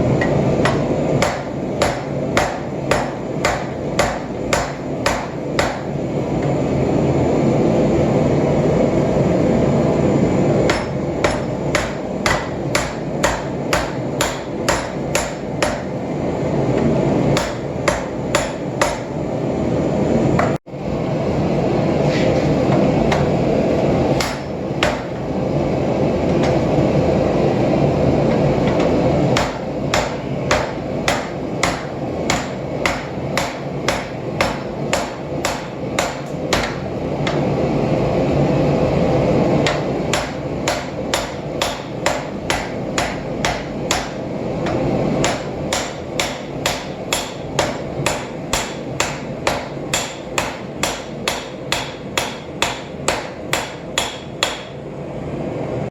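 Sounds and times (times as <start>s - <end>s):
hammer striking hot steel: 0.0s - 6.6s, 10.6s - 16.1s, 17.3s - 19.2s, 24.1s - 25.4s, 28.6s - 37.5s, 39.6s - 54.9s.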